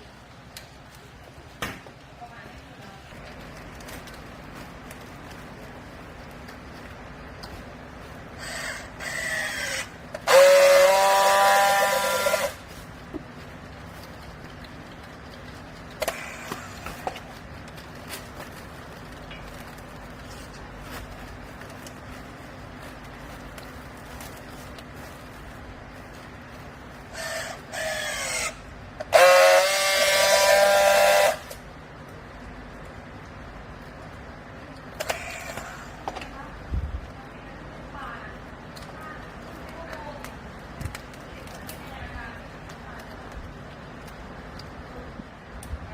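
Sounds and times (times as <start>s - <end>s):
horn-like blasts: 10.2s - 12.6s, 27.2s - 31.6s.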